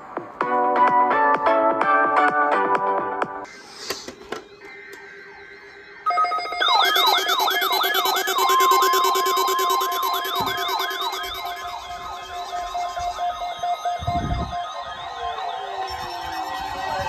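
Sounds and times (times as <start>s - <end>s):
falling whoop siren: 4.3s - 17.0s
steady beeping tones: 4.5s - 17.0s
steady tone: 6.1s - 17.0s.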